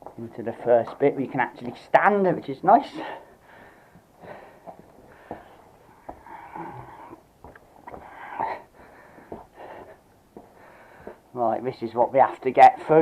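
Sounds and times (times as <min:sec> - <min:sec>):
man breathing heavily: 0:03.0 - 0:11.3.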